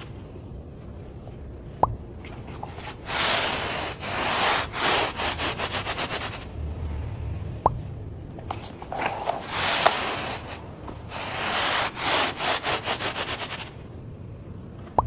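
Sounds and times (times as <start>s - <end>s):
pet hair remover rubbing strokes: 2.6s - 6.5s, 8.9s - 13.8s.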